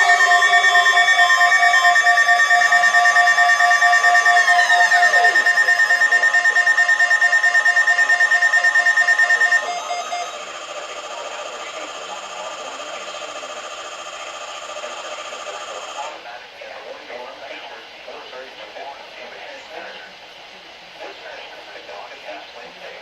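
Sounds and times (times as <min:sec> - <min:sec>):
rapid pulsing alarm beep: 0:00.0 - 0:16.2
radio hiss: 0:03.3 - 0:23.0.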